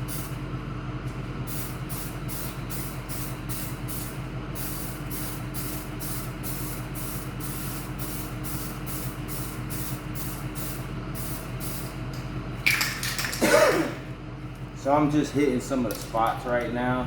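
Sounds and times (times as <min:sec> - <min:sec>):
low machine hum: 0:00.0 - 0:17.0
spray gun hissing bursts: 0:01.5 - 0:11.9.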